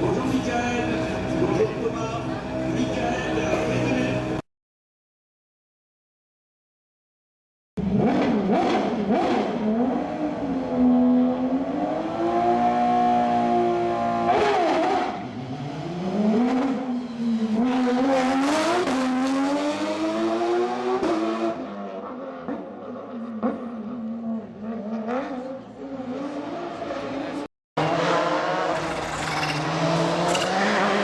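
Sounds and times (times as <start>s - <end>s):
rally car engine revving: 7.8s - 31.0s.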